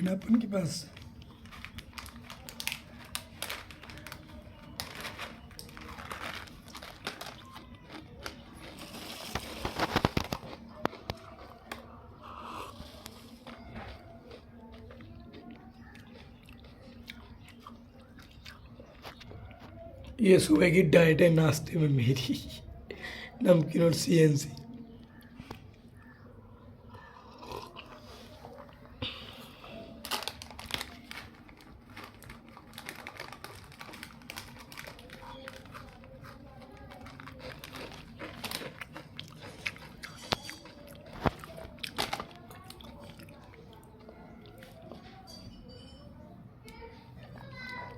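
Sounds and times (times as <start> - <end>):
plastic snack packet crinkling: 0.0 - 11.9, 29.7 - 45.0.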